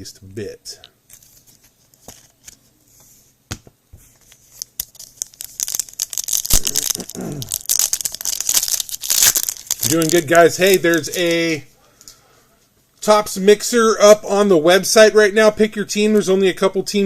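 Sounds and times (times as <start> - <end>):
foil wrapper crinkling: 4.2 - 11.4.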